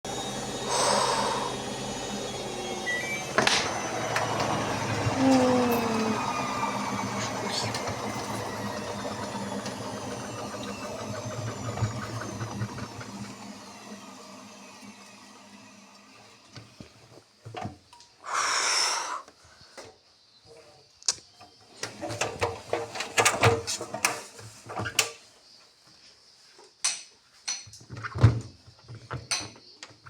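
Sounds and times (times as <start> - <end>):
washing machine drum spinning down: 1.4 - 14.4.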